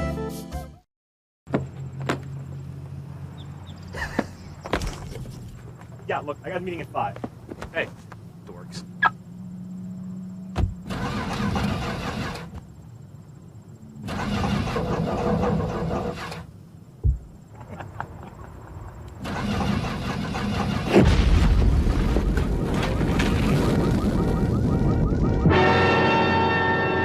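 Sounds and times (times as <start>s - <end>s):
engine cranking: 10.8s - 12.7s, 14.0s - 16.5s, 19.2s - 21.0s
deep low thump: 17.0s - 17.4s.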